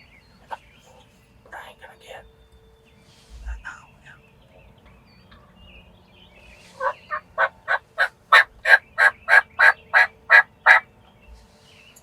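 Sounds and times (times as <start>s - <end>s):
turkey yelping: 6.8s - 10.9s.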